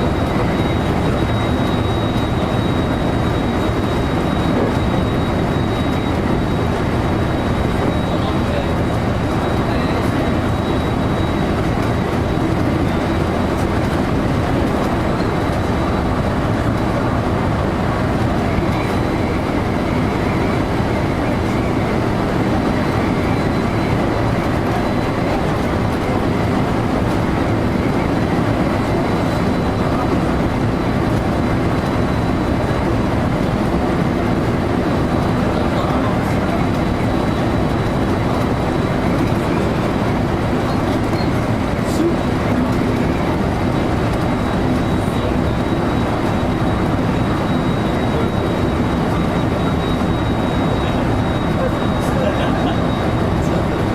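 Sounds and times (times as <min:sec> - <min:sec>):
faint high whine: 0:00.0 - 0:13.7, 0:34.6 - 0:53.9
train wheels rumbling on rails: 0:00.0 - 0:53.9.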